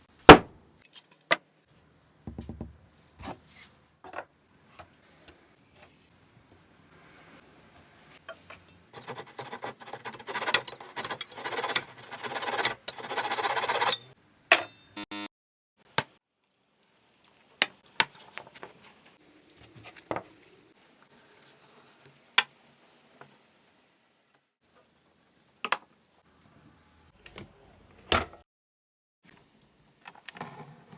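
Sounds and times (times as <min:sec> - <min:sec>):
wood knocking and tapping: 0:02.3 - 0:02.8.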